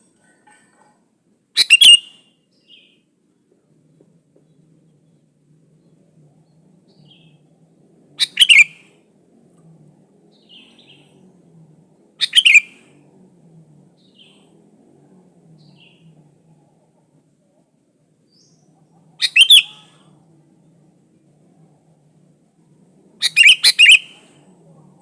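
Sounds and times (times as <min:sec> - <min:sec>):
bulbul calling: 0:01.6 - 0:03.0, 0:08.2 - 0:09.0, 0:12.2 - 0:12.9, 0:18.3 - 0:20.1, 0:23.2 - 0:24.4.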